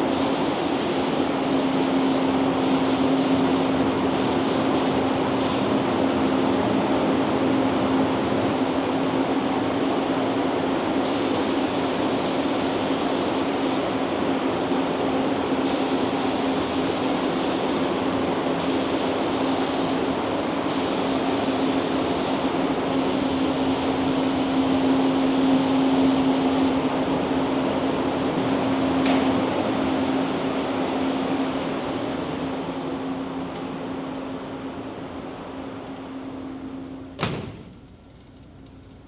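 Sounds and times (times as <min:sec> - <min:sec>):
paint spray gun hissing: 0:00.0 - 0:06.3, 0:08.5 - 0:26.7
fan hum: 0:00.0 - 0:39.0.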